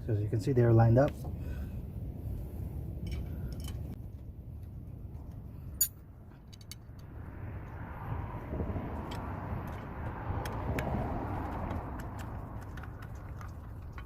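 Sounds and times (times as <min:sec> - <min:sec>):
low background rumble: 0:00.0 - 0:14.0
passing car road noise: 0:06.8 - 0:14.0.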